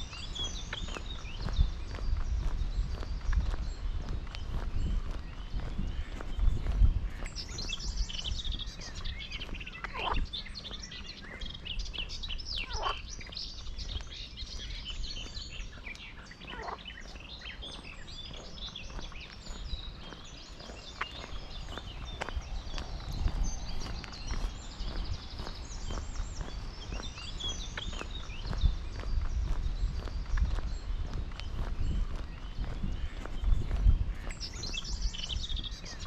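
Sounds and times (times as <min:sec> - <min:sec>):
birds chirping: 0:00.0 - 0:36.0.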